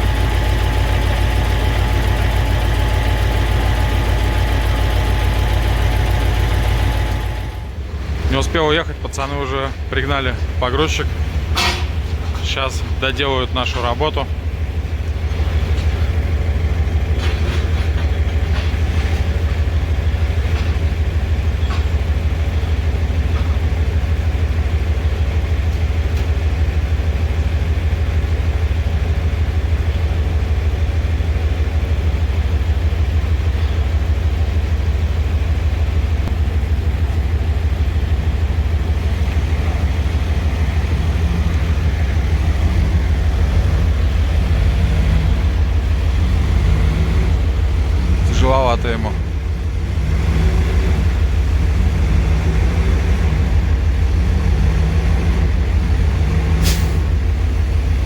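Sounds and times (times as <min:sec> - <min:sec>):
diesel engine rumbling: 0:00.0 - 0:58.0.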